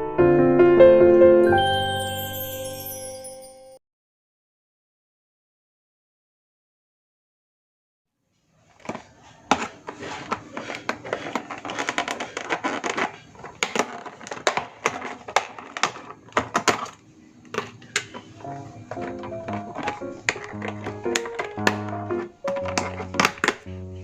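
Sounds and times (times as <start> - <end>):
kitchen clicks and knocks: 8.8 - 23.7.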